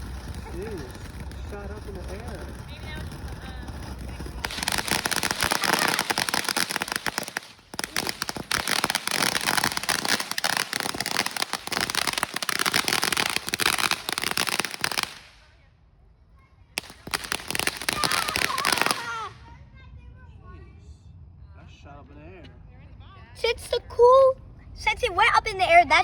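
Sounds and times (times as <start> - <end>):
firework crackling: 0.0 - 15.6, 16.8 - 19.6.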